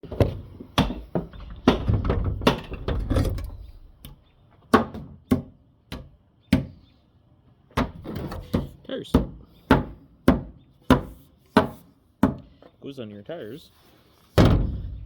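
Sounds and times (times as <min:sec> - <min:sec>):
sharp knocks and thuds: 0:00.0 - 0:06.8, 0:14.4 - 0:15.0.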